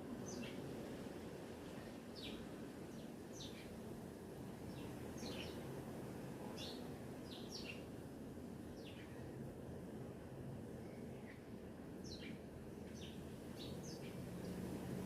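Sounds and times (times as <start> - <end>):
songbirds chirping: 0.2 - 0.8, 2.1 - 3.9, 4.6 - 5.7, 6.5 - 7.9, 8.6 - 9.3, 10.8 - 15.0.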